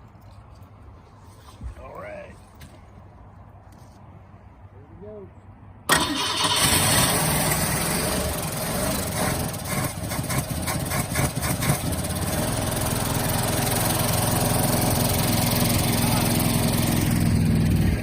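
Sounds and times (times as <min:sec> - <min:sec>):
car engine starting unevenly: 0:05.9 - 0:18.0.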